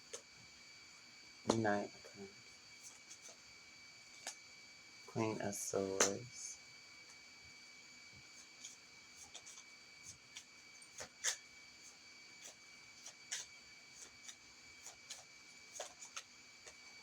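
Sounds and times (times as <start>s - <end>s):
faint high whine: 0.0s - 17.0s
cards tapping and flicking: 1.5s - 1.7s, 5.8s - 6.3s, 10.3s - 11.4s, 12.4s - 16.8s.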